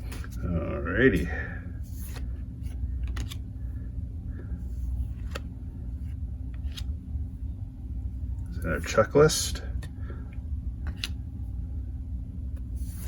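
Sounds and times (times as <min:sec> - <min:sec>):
steady low hum: 0:00.0 - 0:13.0
trading cards being flipped: 0:01.9 - 0:03.5, 0:04.8 - 0:07.0, 0:10.8 - 0:11.2.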